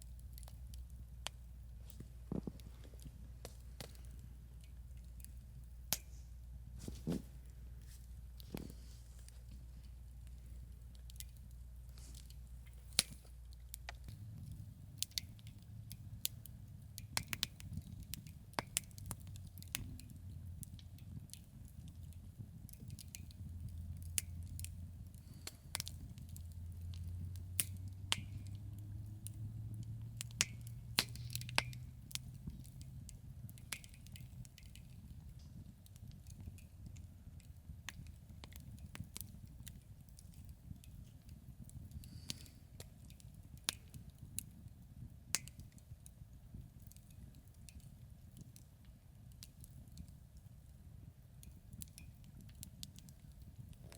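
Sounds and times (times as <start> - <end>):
low steady rumble: 0.0 - 51.6
campfire crackling and popping: 0.0 - 53.9.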